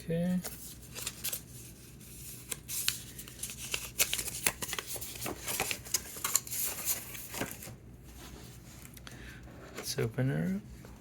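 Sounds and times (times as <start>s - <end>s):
paper packaging rustling: 0.2s - 8.9s.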